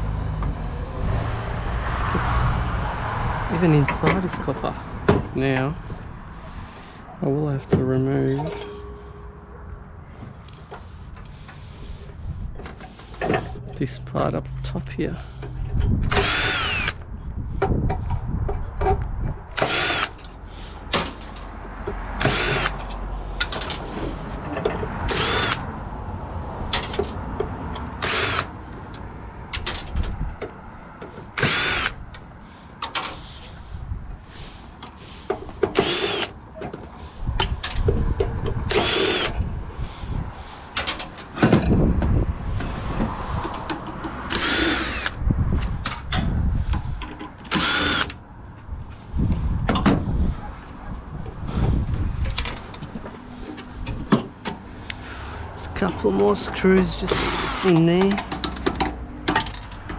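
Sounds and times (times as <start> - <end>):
power drill whining: 16.1 - 17.0, 19.6 - 20.3, 22.2 - 23.8, 25.1 - 25.6, 28.0 - 28.5, 31.4 - 32.0, 35.8 - 36.4, 38.7 - 39.4, 44.3 - 45.2, 47.5 - 48.2, 57.0 - 57.8.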